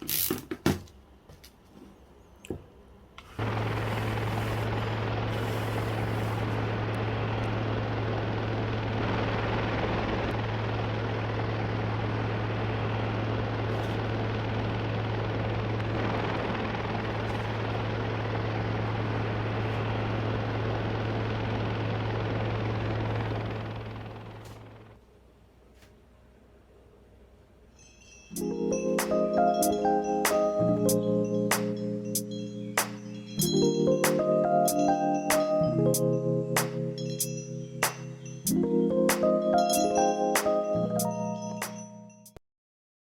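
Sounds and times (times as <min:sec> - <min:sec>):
electric motor humming: 0:03.3 - 0:25.0.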